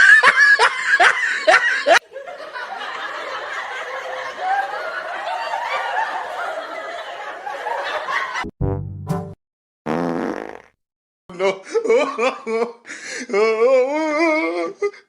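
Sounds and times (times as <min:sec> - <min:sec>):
people laughing and snickering: 0:00.0 - 0:08.4.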